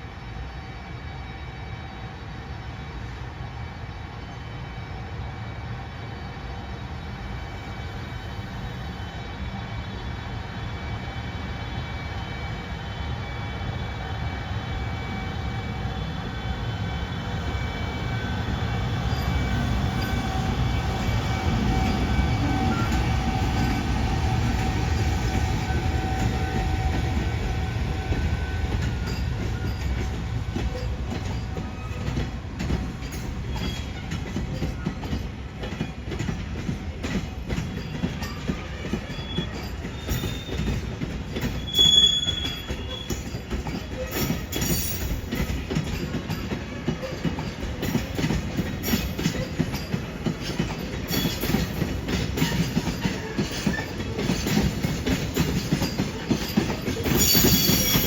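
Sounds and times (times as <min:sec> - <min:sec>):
train wheels rumbling on rail: 0:00.0 - 0:58.0
clacking over rail joints: 0:28.7 - 0:58.0
high wheel squeals: 0:37.8 - 0:58.0.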